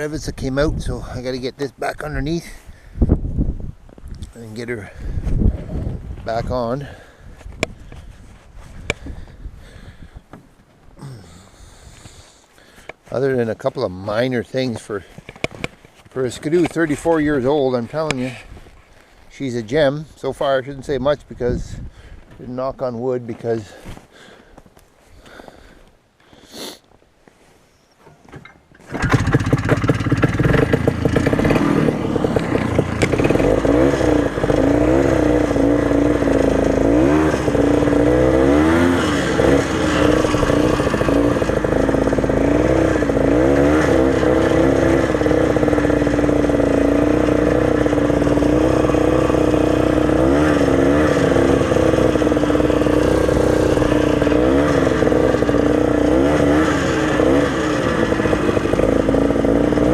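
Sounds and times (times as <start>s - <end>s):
snowmobile engine revving: 28.9s - 59.9s.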